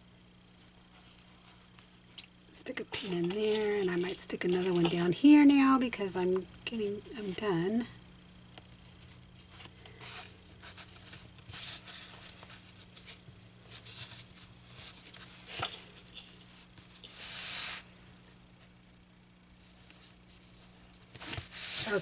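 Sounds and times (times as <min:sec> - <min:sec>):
fabric rustling against styrofoam: 0:20.0 - 0:22.0.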